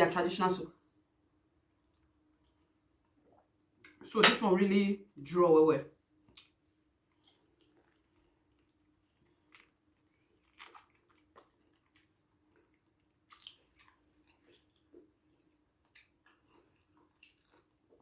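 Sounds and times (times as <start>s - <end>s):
wet chewing and smacking: 6.2s - 18.0s.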